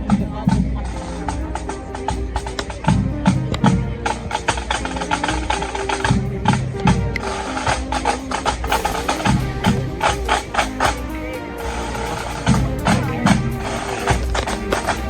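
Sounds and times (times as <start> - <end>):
bass drum beats: 0.0 - 15.0
snare drum rolls: 7.2 - 15.0.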